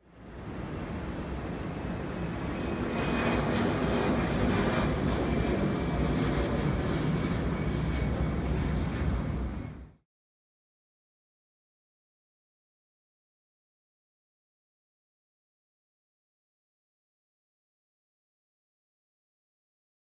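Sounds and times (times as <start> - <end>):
distant jet engines rumbling: 0.1 - 10.0.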